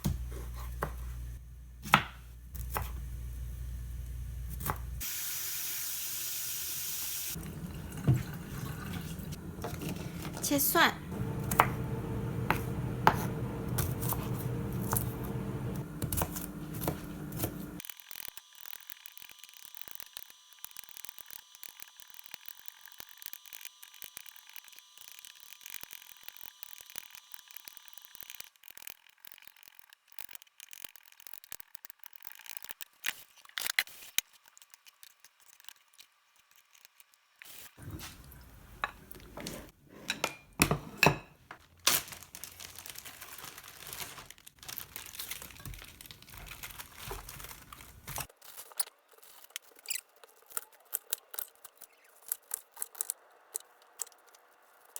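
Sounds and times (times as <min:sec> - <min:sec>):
knife chopping on cutting board: 0:01.8 - 0:03.0, 0:11.1 - 0:17.8
low steady hum: 0:07.4 - 0:17.8.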